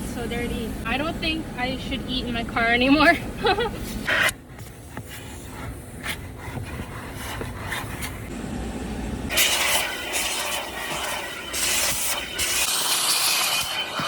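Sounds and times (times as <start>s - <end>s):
vacuum hose sucking air: 9.0s - 14.0s.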